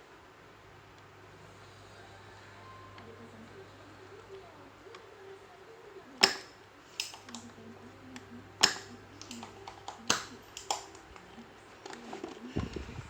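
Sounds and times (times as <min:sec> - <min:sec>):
faint steady hum: 0:00.0 - 0:13.0
hand tools clicking: 0:06.2 - 0:07.4, 0:08.6 - 0:11.0.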